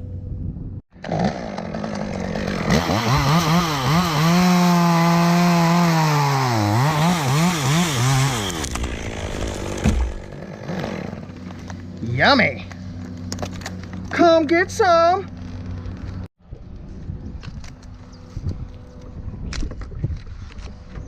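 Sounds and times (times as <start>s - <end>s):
chainsaw revving: 1.0s - 11.3s.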